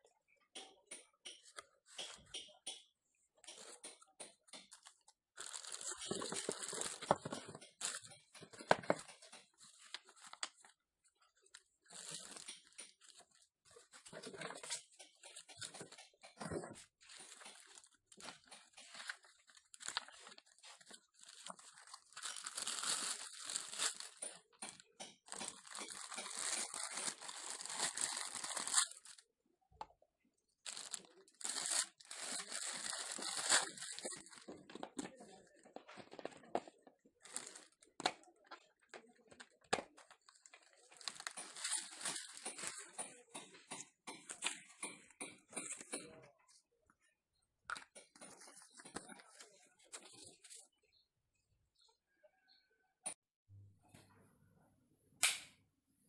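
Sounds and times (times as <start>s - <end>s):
packaging crinkling and tearing: 4.6s - 10.8s, 11.4s - 14.8s, 17.0s - 29.2s, 30.7s - 35.4s, 39.3s - 43.0s.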